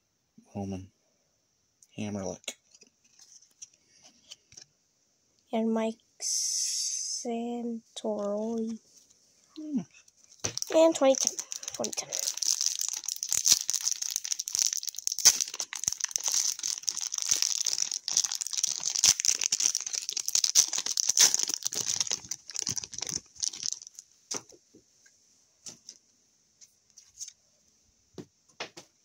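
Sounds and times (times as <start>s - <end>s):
wrapper crinkling and tearing: 9.9s - 24.0s.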